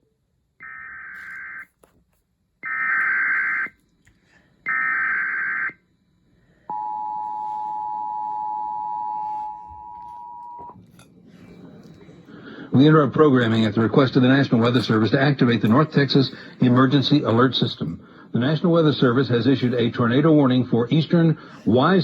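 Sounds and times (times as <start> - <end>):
two-tone attention signal: 6.7 - 10.8.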